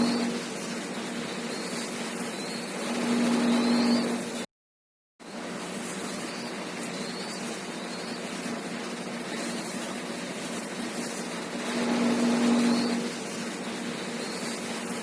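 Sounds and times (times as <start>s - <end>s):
motor-like drone: 0.0s - 0.6s, 1.4s - 4.5s, 11.4s - 15.0s.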